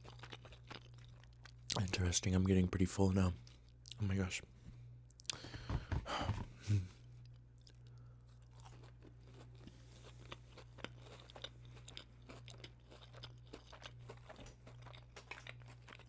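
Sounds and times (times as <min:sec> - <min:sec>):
chewing crispy food: 0:00.0 - 0:02.2, 0:07.1 - 0:16.0
low electrical hum: 0:00.0 - 0:16.0.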